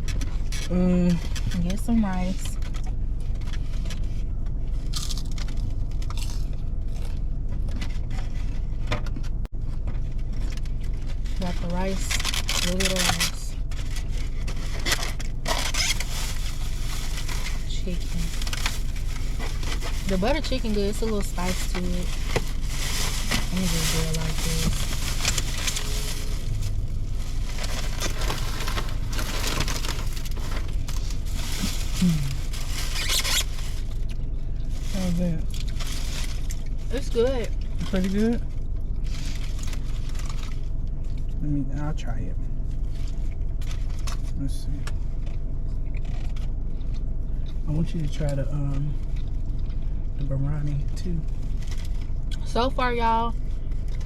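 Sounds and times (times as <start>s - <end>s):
low hum: 0.0s - 54.0s
food wrapper rustling and crinkling: 2.6s - 8.9s, 9.6s - 41.4s, 51.3s - 52.3s
person humming mm: 32.0s - 32.4s.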